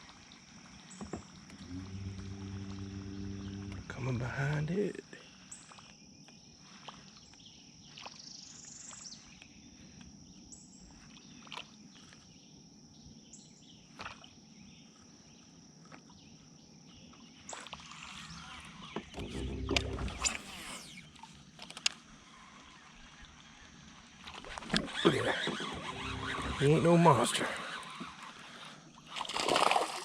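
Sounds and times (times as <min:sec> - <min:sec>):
high-pitched insect drone: 0:01.5 - 0:04.8, 0:17.6 - 0:21.4, 0:24.8 - 0:28.7.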